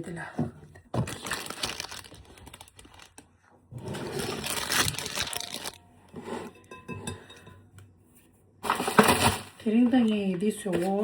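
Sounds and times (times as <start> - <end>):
plastic packaging crinkling: 1.0 - 3.4, 4.1 - 5.8.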